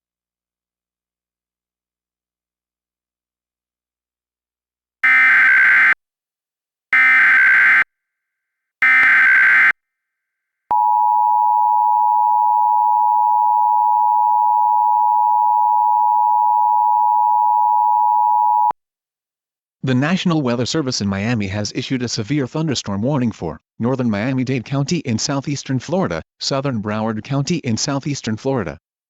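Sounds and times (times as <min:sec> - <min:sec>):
digital data tone bursts: 0:05.0 - 0:06.0, 0:08.8 - 0:09.7
two-tone attention signal: 0:10.7 - 0:18.7.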